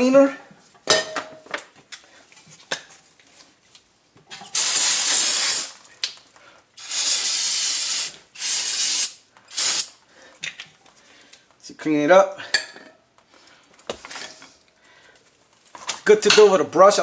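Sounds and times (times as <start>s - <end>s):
aerosol spray hissing: 4.6s - 5.8s, 6.8s - 9.9s.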